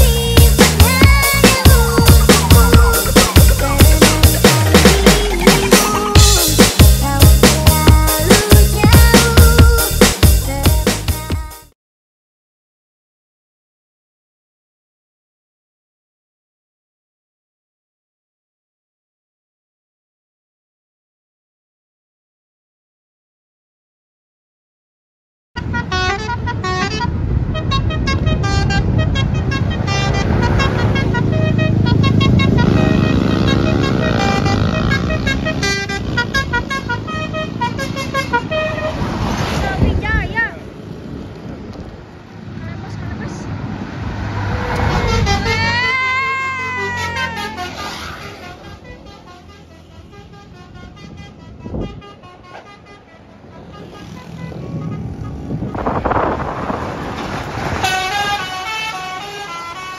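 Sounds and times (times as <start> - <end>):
low engine rumble: 0.0 - 8.9
road traffic: 0.0 - 11.4, 25.6 - 59.9
musical bus horn toots: 25.6 - 39.3, 44.6 - 56.4, 57.8 - 59.9
vehicle passing: 26.2 - 59.9.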